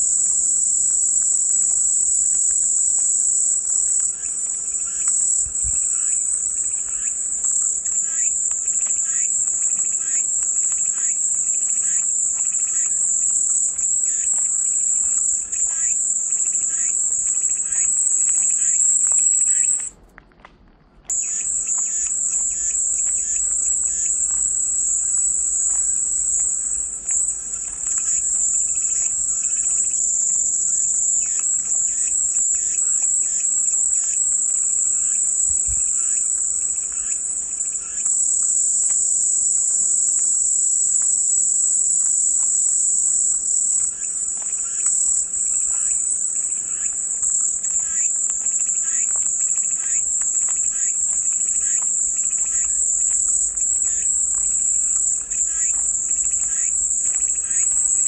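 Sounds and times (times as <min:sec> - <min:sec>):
cicadas droning: 0:00.0 - 0:20.0, 0:21.1 - 0:58.0
faint chirps: 0:21.1 - 0:40.3, 0:42.0 - 0:58.0.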